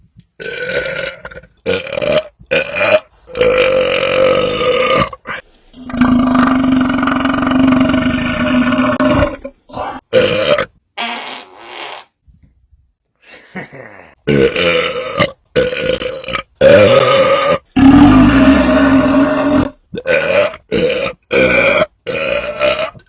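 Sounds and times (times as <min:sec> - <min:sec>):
loud belches: 0:00.4 - 0:11.5, 0:14.3 - 0:23.0.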